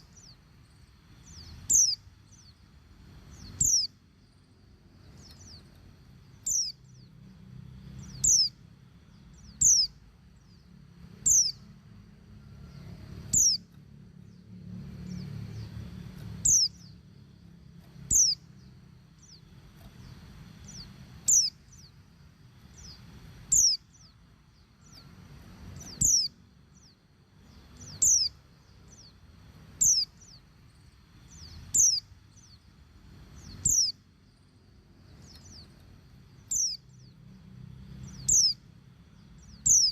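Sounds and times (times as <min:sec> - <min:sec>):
bird giving high slurred calls: 0:03.3 - 0:03.9, 0:11.2 - 0:11.6, 0:13.3 - 0:13.6, 0:16.4 - 0:16.9, 0:22.7 - 0:24.1, 0:25.8 - 0:26.4, 0:33.6 - 0:34.0.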